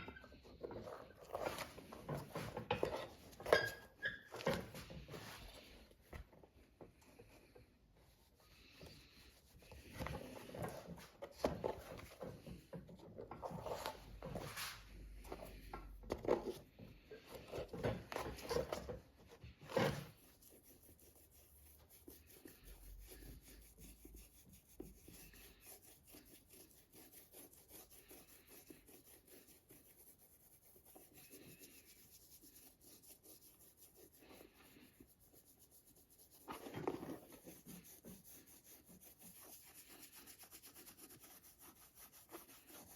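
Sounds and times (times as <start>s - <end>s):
rubbing and scraping on leather boot: 13.4s - 15.6s, 18.0s - 42.9s.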